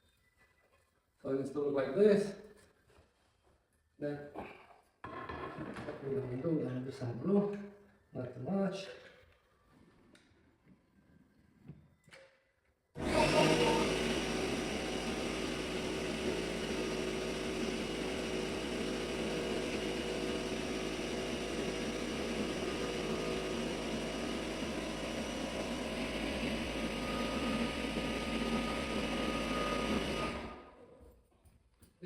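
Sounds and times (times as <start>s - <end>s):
steady machine noise: 13.0s - 30.6s.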